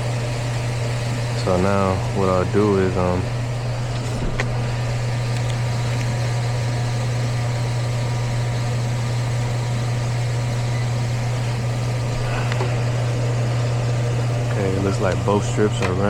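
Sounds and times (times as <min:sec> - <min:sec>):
air handler humming: 0:00.0 - 0:16.0
airflow noise: 0:01.0 - 0:06.6, 0:11.4 - 0:15.8.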